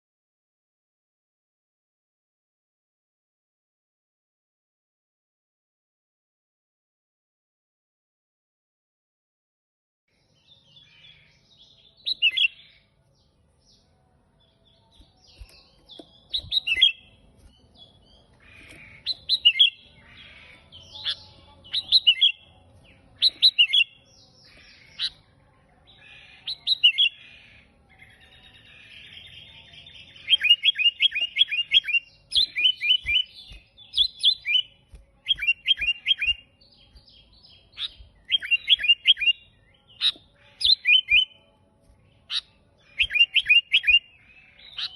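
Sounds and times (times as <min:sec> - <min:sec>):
harsh bird chatter: 0:15.0 - 0:41.2
bird whistled song phrases: 0:15.4 - 0:17.1, 0:23.2 - 0:24.0, 0:28.0 - 0:36.5, 0:37.3 - 0:41.4, 0:42.3 - 0:44.9.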